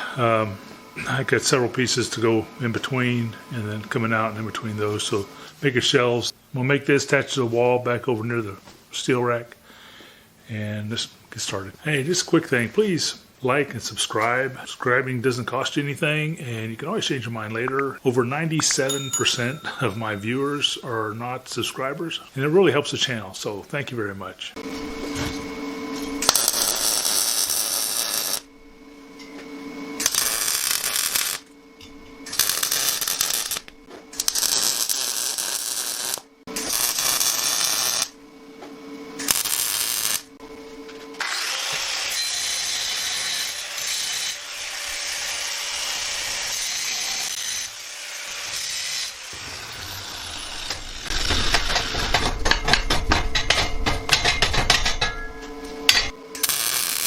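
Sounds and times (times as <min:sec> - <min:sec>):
power tools cutting steel tubing: 0:24.6 - 0:28.5, 0:30.0 - 0:31.6, 0:32.2 - 0:38.2, 0:39.2 - 0:40.3, 0:41.1 - 0:57.0.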